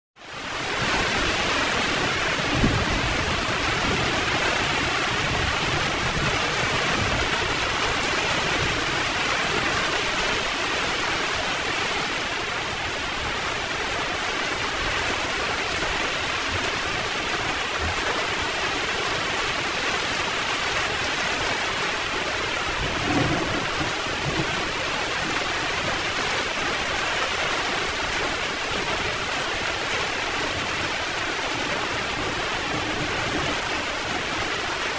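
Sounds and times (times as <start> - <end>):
heavy rain pouring: 0.2 - 34.9
thunder rumbling: 22.8 - 26.0.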